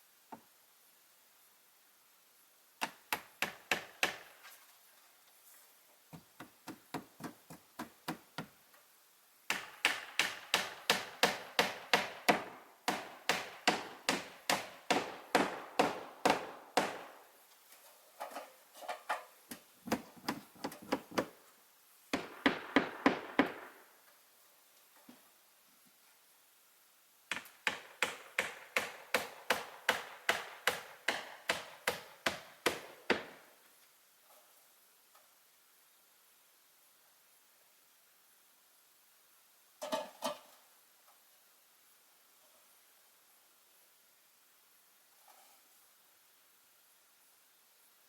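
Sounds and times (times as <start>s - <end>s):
hammer striking wood: 2.8s - 4.4s, 6.4s - 8.5s, 9.5s - 17.2s, 19.9s - 21.3s, 22.2s - 23.8s, 27.3s - 33.5s.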